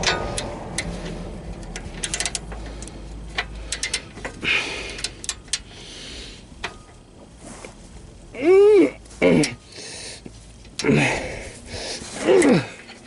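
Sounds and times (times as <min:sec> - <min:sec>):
hand tools clicking and clinking: 0:00.0 - 0:05.9, 0:09.3 - 0:13.0.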